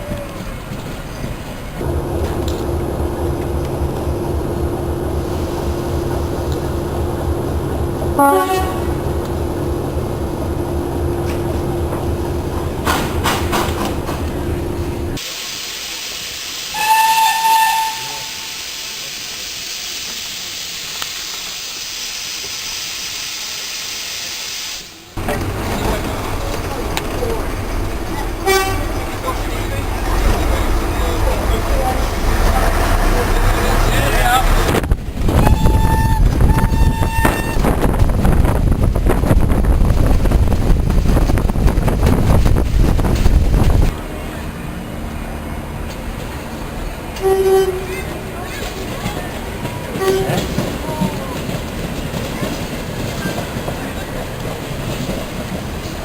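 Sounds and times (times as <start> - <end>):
steam locomotive hissing: 0.0 - 39.0
train rumble: 0.0 - 56.0
steam whistle blast: 16.7 - 18.7, 35.4 - 37.6
wind buffeting microphone: 34.6 - 44.0.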